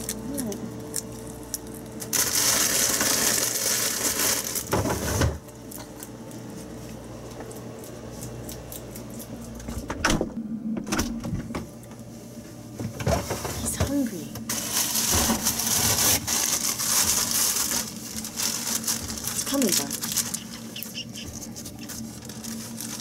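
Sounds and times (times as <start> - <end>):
rabbit chewing crunchily: 0.0 - 4.7, 5.6 - 9.8, 14.5 - 23.0.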